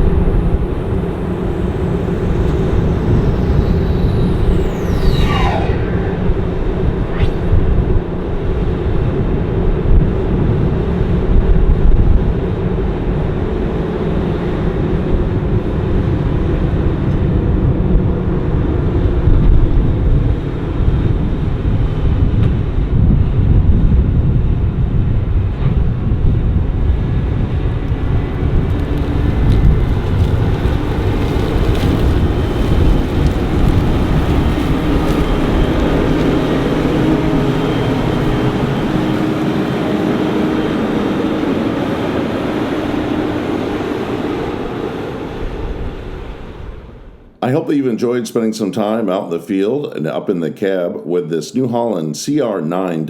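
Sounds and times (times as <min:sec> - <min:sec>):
combine harvester rumbling: 0:27.0 - 0:46.9.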